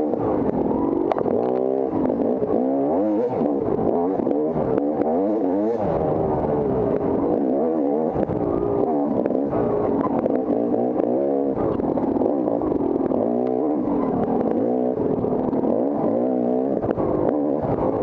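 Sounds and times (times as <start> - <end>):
motorcycle engine revving: 0.0 - 18.0
sharp clicks and knocks: 0.2 - 2.7.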